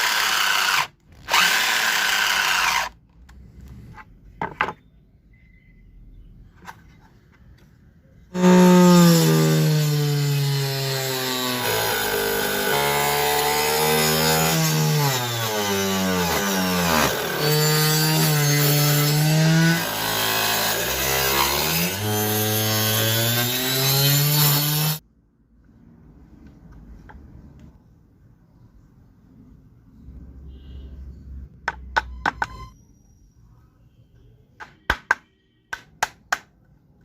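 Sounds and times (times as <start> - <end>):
power tool cutting wood: 0.0 - 3.0, 8.4 - 25.0.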